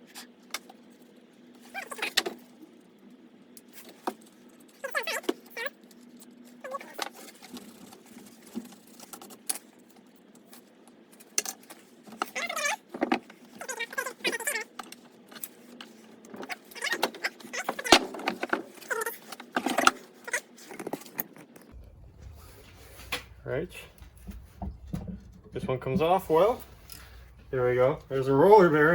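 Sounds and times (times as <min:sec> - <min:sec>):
metal engine parts clinking and scraping: 0:20.8 - 0:28.9.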